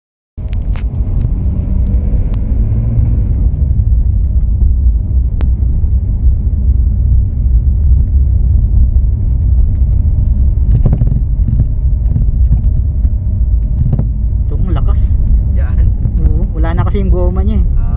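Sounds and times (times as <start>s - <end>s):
car road noise rumble: 0.4s - 17.9s
shock absorber knocking: 9.6s - 14.3s.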